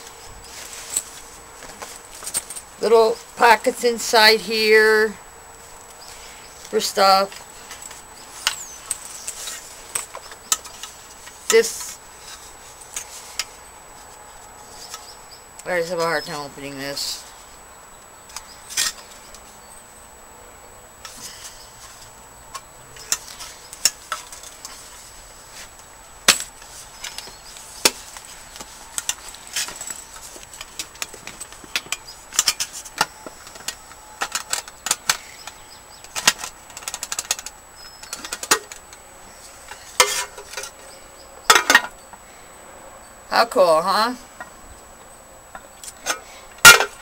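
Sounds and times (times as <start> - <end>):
metal mess kit clicks and clinks: 40.0 - 40.8, 41.5 - 42.0, 46.0 - 47.0.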